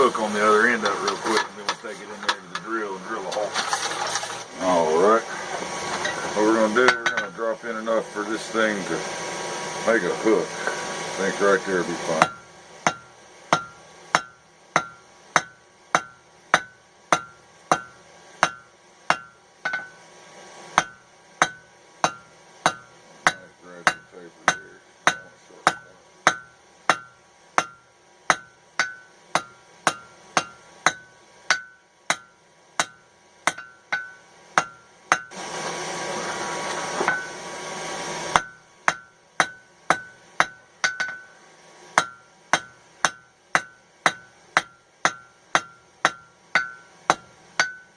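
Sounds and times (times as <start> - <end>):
hammer striking steel on anvil: 6.0 - 7.4, 12.2 - 20.0, 20.8 - 35.4, 37.0 - 37.4, 38.3 - 41.4, 42.0 - 47.9.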